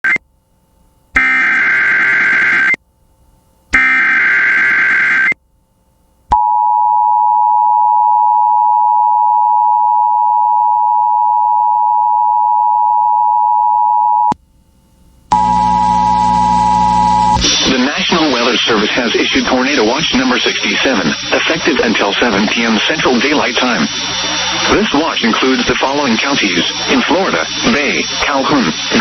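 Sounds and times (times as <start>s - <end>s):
buzzing data bursts: 1.2s - 2.8s, 3.7s - 5.4s, 15.3s - 29.0s.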